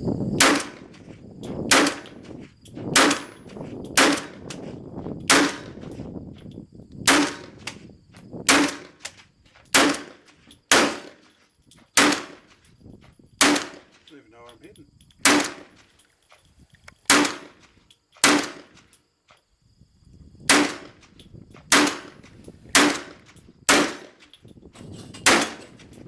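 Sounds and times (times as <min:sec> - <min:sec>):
rifle shots with ringing echo: 0:00.4 - 0:01.0, 0:01.7 - 0:02.2, 0:03.0 - 0:03.4, 0:04.0 - 0:04.5, 0:05.3 - 0:05.8, 0:07.0 - 0:07.7, 0:08.5 - 0:09.0, 0:09.7 - 0:11.3, 0:12.0 - 0:12.6, 0:13.4 - 0:14.0, 0:15.2 - 0:15.8, 0:17.1 - 0:17.6, 0:18.2 - 0:18.8, 0:20.5 - 0:21.0, 0:21.7 - 0:24.3, 0:25.2 - 0:25.8.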